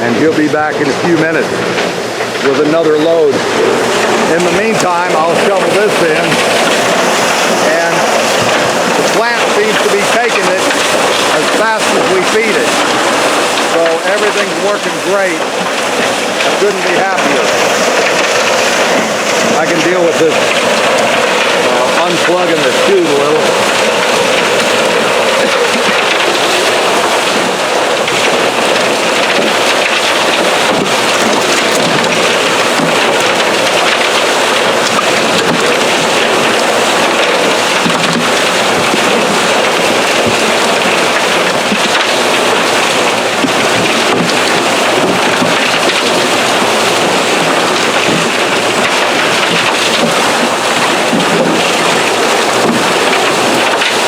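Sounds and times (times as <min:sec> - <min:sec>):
water and gravel slurry rushing: 0:00.0 - 0:54.0.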